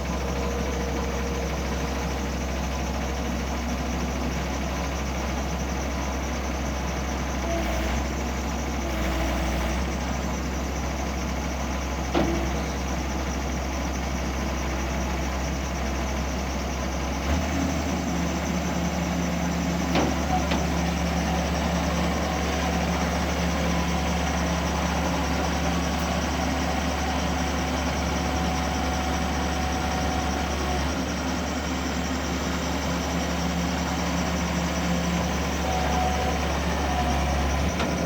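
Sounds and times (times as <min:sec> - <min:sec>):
diesel engine idling: 0:00.0 - 0:38.0.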